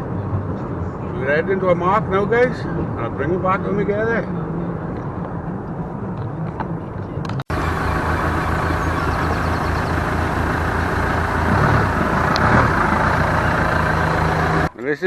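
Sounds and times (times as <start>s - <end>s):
boat engine running: 7.5s - 14.8s.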